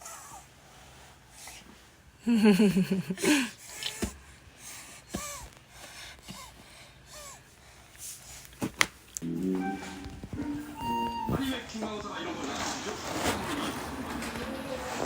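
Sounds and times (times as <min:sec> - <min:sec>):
baby gasping breaths: 0:03.2 - 0:08.6
music: 0:09.2 - 0:11.8
baby squeaking: 0:09.5 - 0:11.5.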